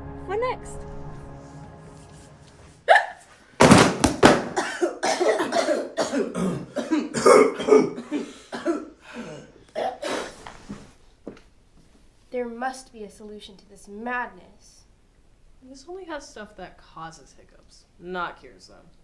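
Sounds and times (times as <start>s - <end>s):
breathy coughing-like bursts: 2.9s - 10.5s.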